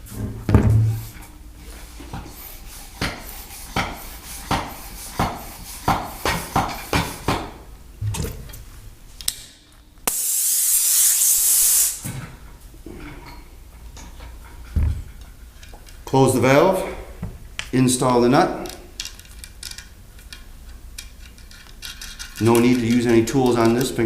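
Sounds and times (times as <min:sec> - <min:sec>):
loud hiss of air: 0:10.1 - 0:12.2.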